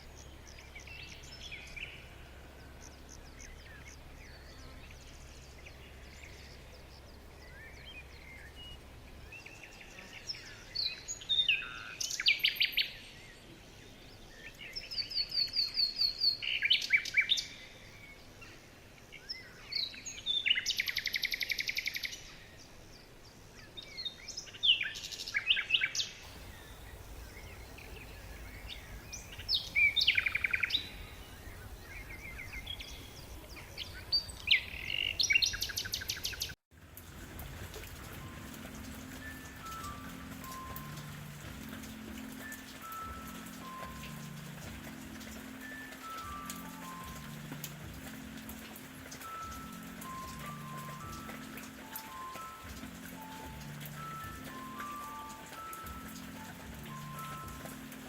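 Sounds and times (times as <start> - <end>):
songbirds singing: 0.0 - 36.6, 37.2 - 58.0
faint steady hiss: 0.0 - 58.0.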